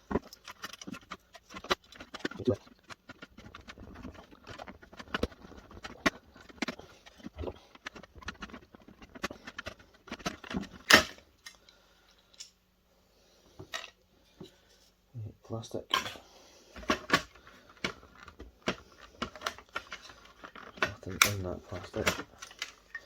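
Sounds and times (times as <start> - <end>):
plastic parts clattering: 0.0 - 12.6, 13.6 - 14.0, 15.8 - 23.0.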